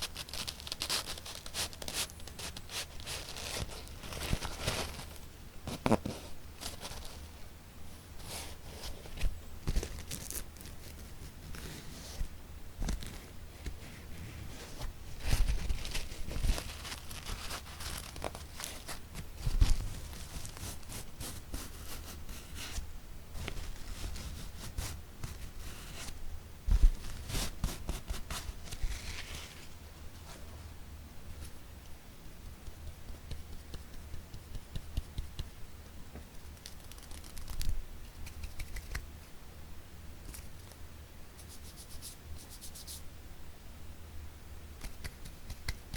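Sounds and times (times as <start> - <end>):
crinkly rustling: 0.0 - 7.4, 8.2 - 22.8, 23.4 - 30.7
fingertips tapping: 32.4 - 35.6, 36.4 - 39.1, 44.8 - 45.9.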